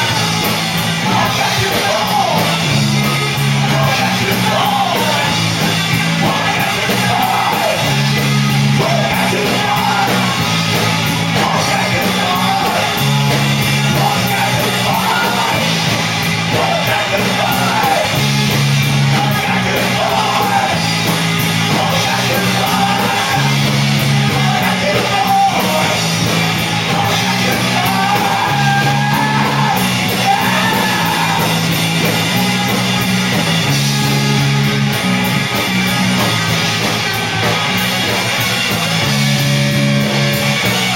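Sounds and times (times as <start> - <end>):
person singing: 0.0 - 5.5, 6.1 - 33.0
rock band playing live: 0.0 - 40.9.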